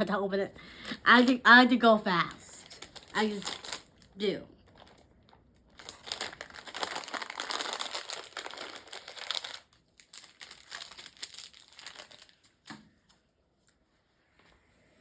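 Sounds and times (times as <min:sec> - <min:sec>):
wrapper crinkling: 0:00.8 - 0:01.5, 0:02.2 - 0:12.7.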